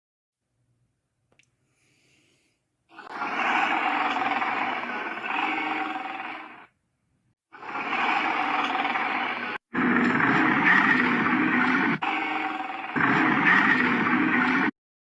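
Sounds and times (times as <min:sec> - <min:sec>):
cartoon alligator growling roar: 0:02.9 - 0:06.7, 0:07.6 - 0:14.7.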